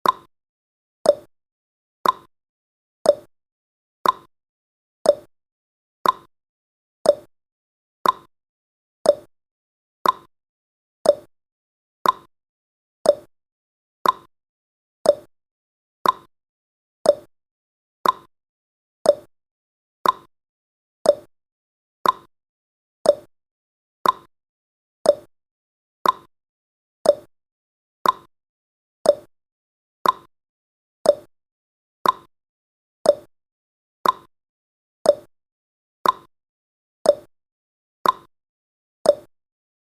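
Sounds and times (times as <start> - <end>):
countdown timer ticking: 7.1 - 7.3, 9.1 - 9.3, 11.1 - 11.3, 13.1 - 13.3, 15.1 - 15.3, 17.1 - 17.3, 19.1 - 19.3, 21.1 - 21.3, 23.1 - 23.3, 24.0 - 24.3, 25.1 - 25.3, 26.0 - 26.3, 27.0 - 27.3, 28.0 - 28.3, 29.1 - 29.3, 30.0 - 30.3, 31.1 - 31.3, 32.0 - 32.3, 33.1 - 33.3, 34.0 - 34.3, 35.1 - 35.3, 36.0 - 36.3, 37.1 - 37.3, 38.0 - 38.3, 39.1 - 39.3.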